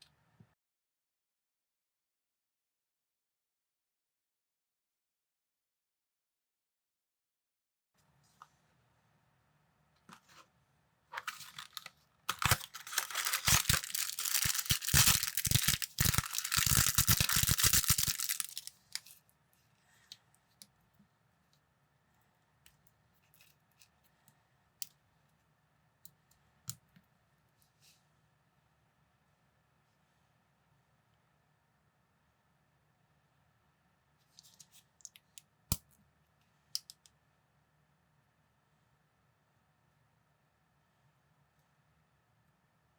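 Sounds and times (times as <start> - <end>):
plastic pieces clicking: 11.2 - 19.1
plastic packaging tearing and crinkling: 11.2 - 19.2.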